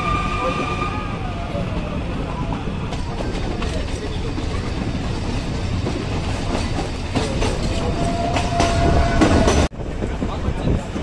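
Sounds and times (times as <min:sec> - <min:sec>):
train rumbling along track: 0:00.0 - 0:11.0
wheels clicking over rail joints: 0:01.8 - 0:09.8.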